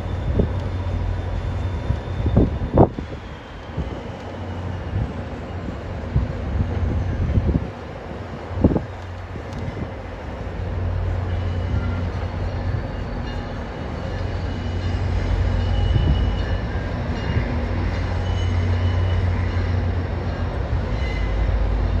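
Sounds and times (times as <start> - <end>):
wind buffeting microphone: 0.1 - 12.9, 15.2 - 18.1.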